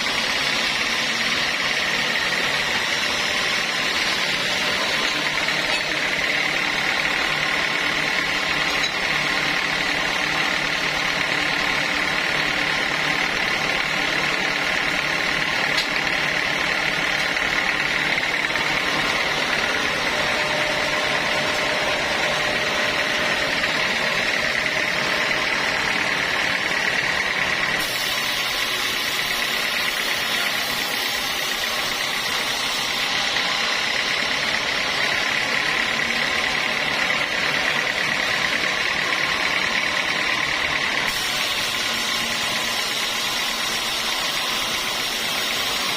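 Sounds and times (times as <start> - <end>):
sawmill machinery with high whine: 0.0 - 45.9.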